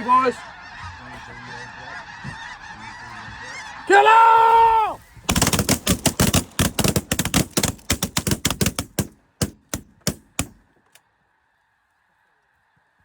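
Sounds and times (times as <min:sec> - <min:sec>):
geese calling: 0:00.0 - 0:13.0
shotgun fire: 0:05.3 - 0:10.6.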